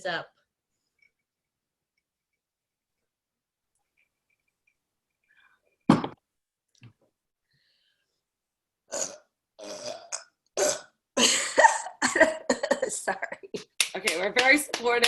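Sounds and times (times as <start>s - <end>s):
woman burping: 8.9s - 13.6s.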